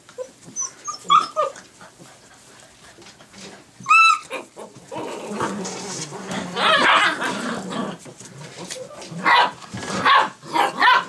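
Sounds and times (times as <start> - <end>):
puppy yelping: 0.2 - 1.6, 3.8 - 5.1, 6.6 - 7.4, 8.8 - 11.0
puppies yipping: 0.2 - 1.7, 3.8 - 5.1.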